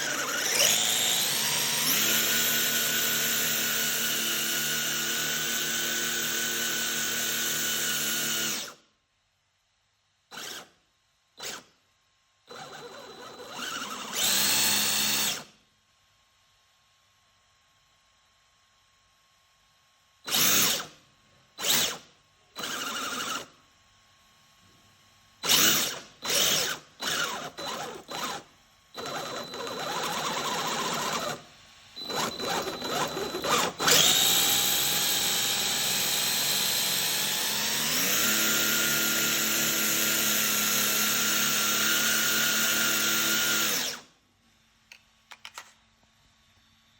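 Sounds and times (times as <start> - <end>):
electric motor whirring: 0.0 - 4.1, 32.0 - 44.0.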